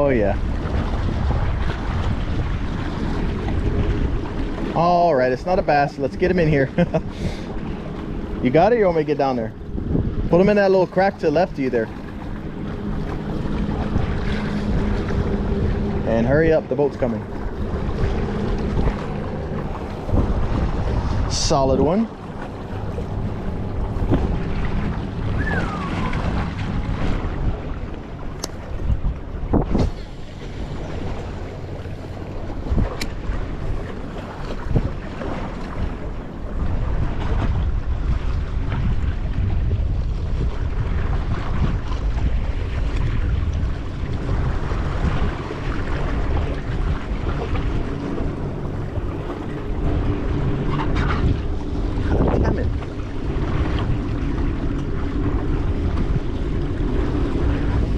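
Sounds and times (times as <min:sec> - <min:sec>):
motorboat engine droning: 0:00.0 - 0:57.9
waves washing against rocks: 0:00.0 - 0:57.9
wind buffeting microphone: 0:00.0 - 0:57.9
falling whistle: 0:25.3 - 0:26.3.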